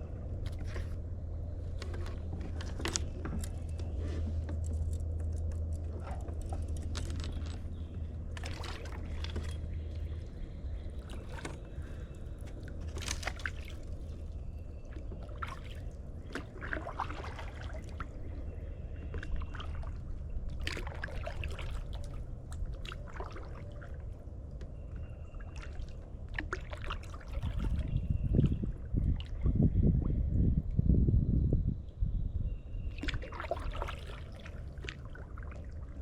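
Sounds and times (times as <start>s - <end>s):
kayak paddle strokes splashing: 5.9s - 24.1s, 25.6s - 28.0s, 32.9s - 36.0s.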